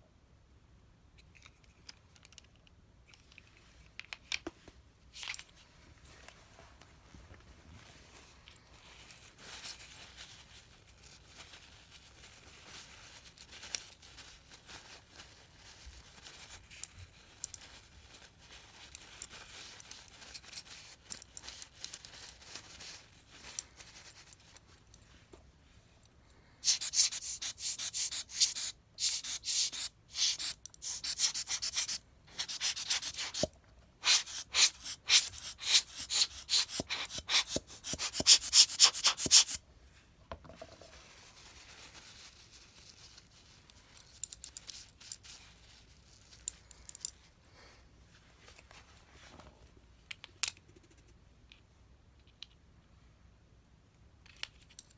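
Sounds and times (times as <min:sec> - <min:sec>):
faint handling and scraping: 0:01.2 - 0:50.6
fast sanding strokes: 0:26.6 - 0:39.6.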